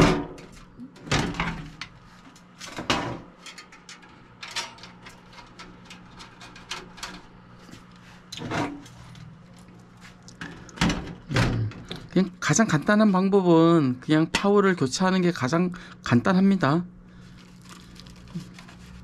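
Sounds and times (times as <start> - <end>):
metal computer case handled: 0.0 - 2.0.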